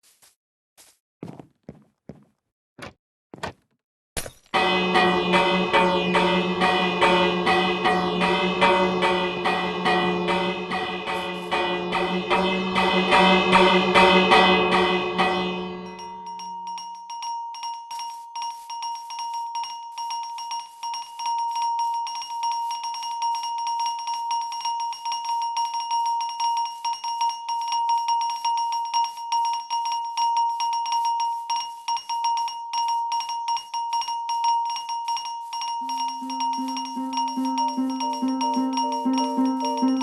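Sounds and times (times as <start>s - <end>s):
low pulsing alarm tone: 4.6s - 17.0s, 35.8s - 40.0s
fire alarm bell ringing: 4.6s - 40.0s.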